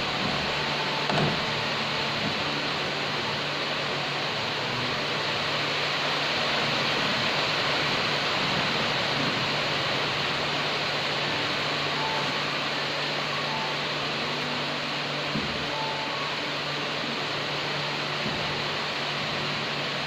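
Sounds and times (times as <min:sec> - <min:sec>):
low steady hum: 0:00.0 - 0:20.0
steady rain: 0:00.0 - 0:20.0.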